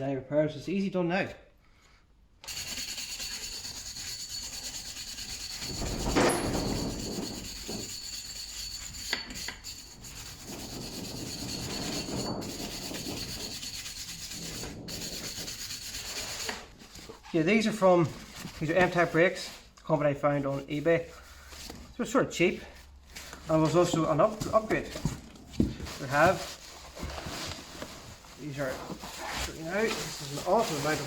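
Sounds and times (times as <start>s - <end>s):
wire brush scrubbing rust: 2.5s - 17.3s, 28.3s - 31.0s.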